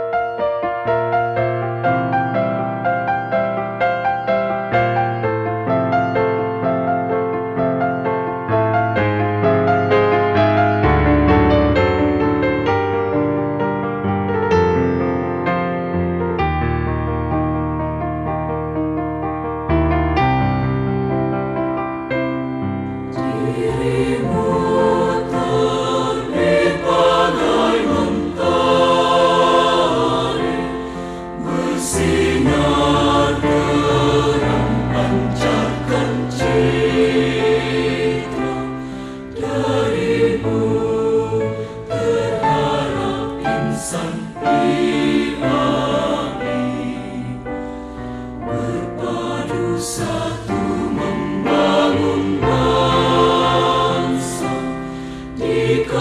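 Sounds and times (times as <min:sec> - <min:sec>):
choir singing sustained chords: 0:22.6 - 0:56.0.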